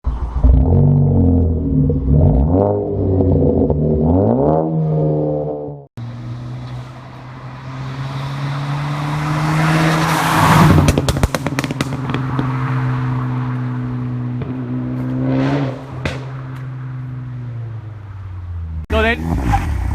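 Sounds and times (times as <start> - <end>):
car engine revving: 0.4 - 19.9
exhaust crackles and pops: 10.6 - 12.6.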